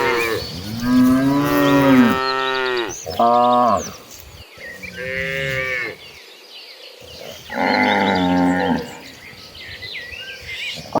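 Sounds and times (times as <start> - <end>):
cattle mooing: 0.0 - 3.9, 7.4 - 9.0.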